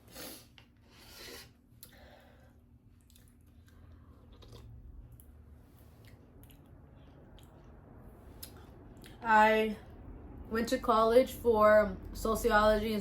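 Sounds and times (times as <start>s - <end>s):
person chewing food: 2.8s - 9.2s.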